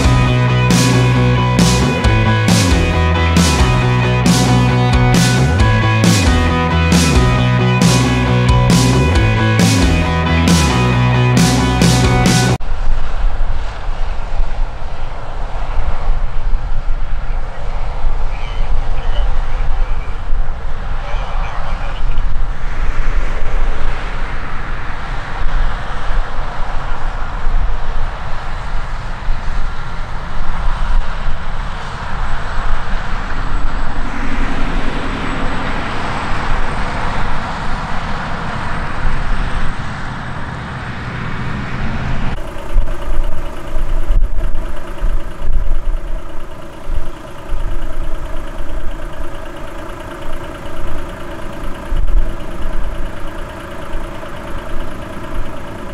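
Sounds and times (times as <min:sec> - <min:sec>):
vehicle rushing noise: 0:00.0 - 0:46.0
engine hum: 0:00.0 - 0:55.9.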